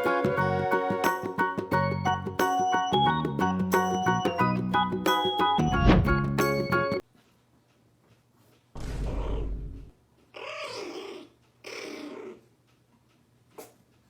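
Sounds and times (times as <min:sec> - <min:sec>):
background music: 0:00.0 - 0:07.0.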